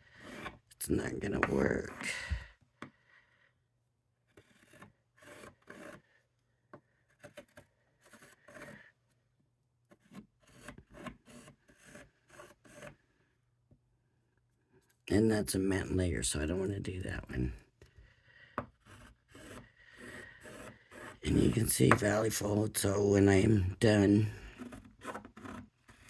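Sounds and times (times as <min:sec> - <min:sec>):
craft tool scraping plastic template: 0:00.2 - 0:02.2, 0:04.3 - 0:06.1, 0:06.7 - 0:09.0, 0:09.8 - 0:13.0, 0:18.6 - 0:22.3, 0:23.4 - 0:26.0.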